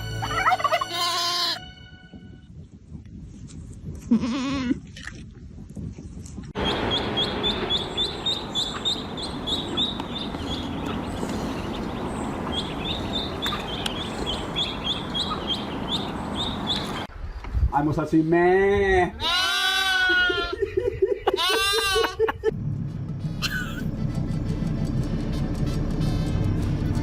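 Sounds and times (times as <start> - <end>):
goat bleating: 0.7 - 1.6, 4.1 - 4.8, 19.2 - 20.6, 21.3 - 22.2.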